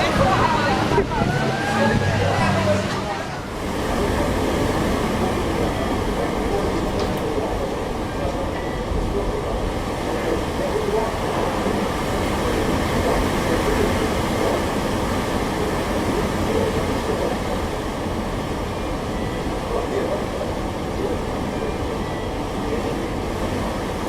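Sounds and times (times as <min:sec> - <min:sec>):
stormy sea rushing: 0:00.0 - 0:24.0.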